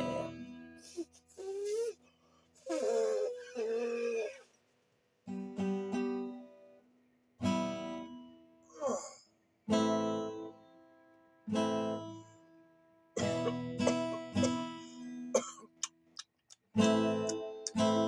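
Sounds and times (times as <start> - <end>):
acoustic guitar chords ringing: 0.0 - 0.8, 13.2 - 15.9, 16.8 - 18.0.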